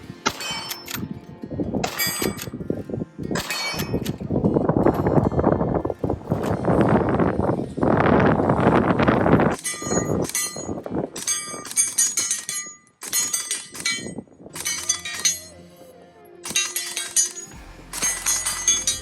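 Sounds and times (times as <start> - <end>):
music with glassy chiming percussion: 16.5 - 19.0.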